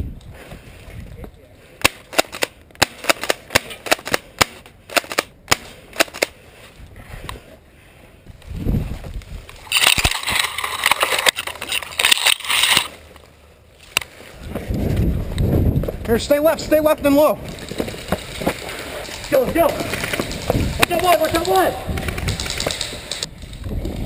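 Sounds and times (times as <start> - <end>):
airsoft guns firing: 1.8 - 6.4.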